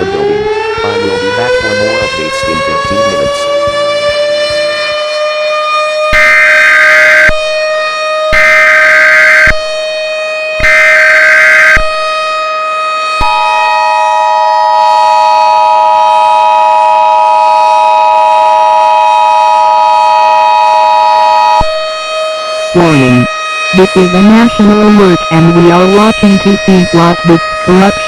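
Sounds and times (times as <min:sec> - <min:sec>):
constant steady tone: 0:00.0 - 0:28.0
two-tone attention signal: 0:22.8 - 0:28.0.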